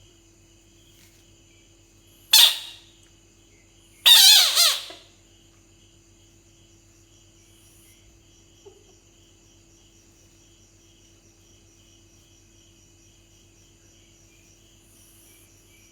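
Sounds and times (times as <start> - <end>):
bullfrog calling: 2.3 - 2.8, 4.1 - 5.0.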